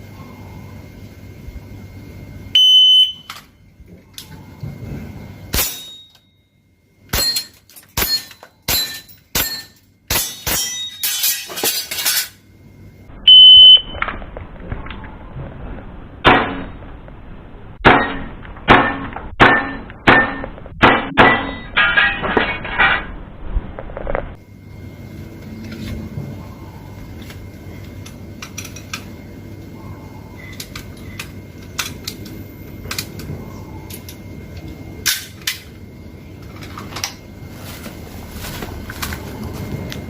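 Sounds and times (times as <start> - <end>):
shot timer beeps: 2.6 - 3.3, 13.3 - 14.0
shots striking metal plate: 5.5 - 6.1, 7.1 - 11.9, 16.2 - 16.8, 17.8 - 22.6.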